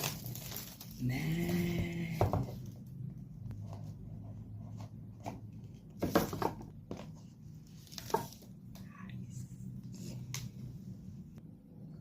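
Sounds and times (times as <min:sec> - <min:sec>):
package being unboxed: 0:00.0 - 0:01.7.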